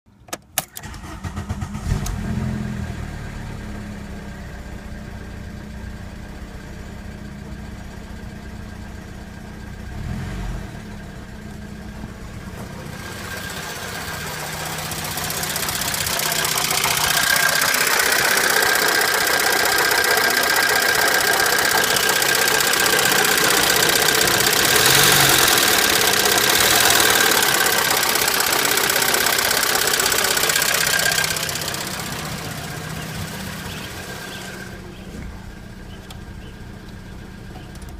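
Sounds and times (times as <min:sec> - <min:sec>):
car engine starting and idling: 0:00.1 - 0:37.9
engine revving: 0:00.8 - 0:04.5, 0:09.8 - 0:11.3, 0:12.0 - 0:37.9
engine lifter ticking clatter: 0:12.4 - 0:37.9.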